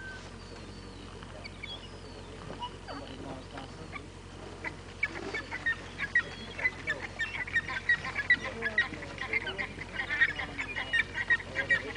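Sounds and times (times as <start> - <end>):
many birds calling: 0.0 - 11.9.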